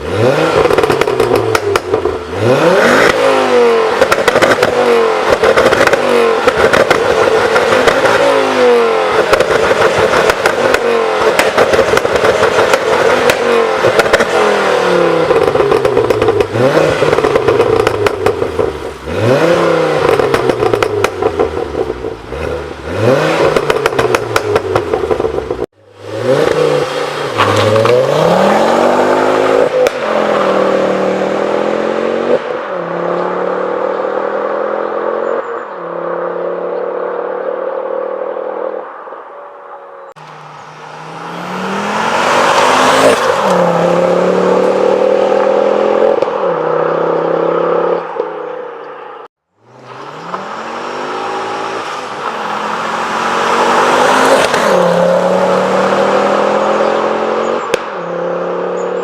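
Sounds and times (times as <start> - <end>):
car engine revving: 0.0 - 35.4, 40.1 - 59.0
exhaust crackles and pops: 9.2 - 14.4, 15.3 - 18.9, 20.0 - 22.1.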